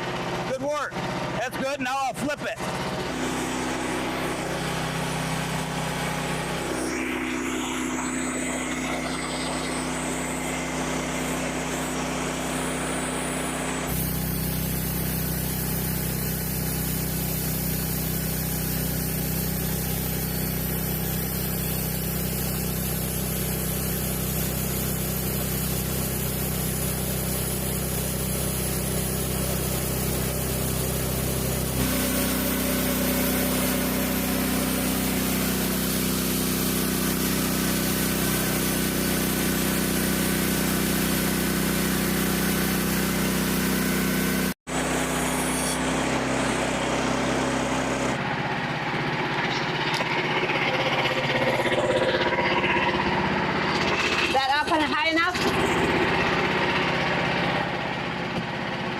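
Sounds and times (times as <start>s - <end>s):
sawmill gasoline engine running: 0.0s - 58.9s.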